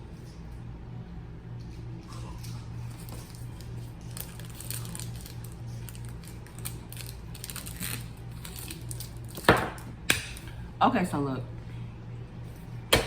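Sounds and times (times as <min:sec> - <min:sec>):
steady low hum: 0:00.0 - 0:13.0
snack packets crinkling: 0:03.0 - 0:09.5.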